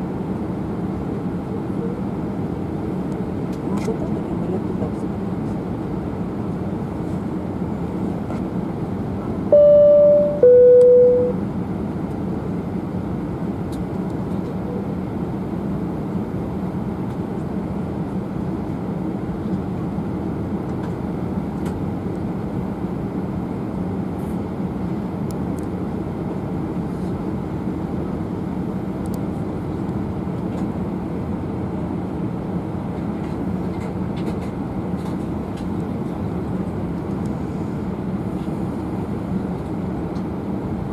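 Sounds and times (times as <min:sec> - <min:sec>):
airplane cabin noise with low hum: 0:00.0 - 0:40.9
two-tone cabin chime: 0:09.5 - 0:11.4.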